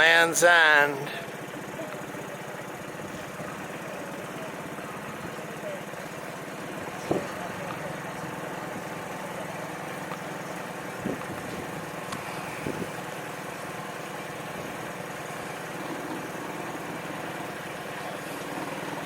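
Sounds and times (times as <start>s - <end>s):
boat motor running: 0.0s - 19.0s.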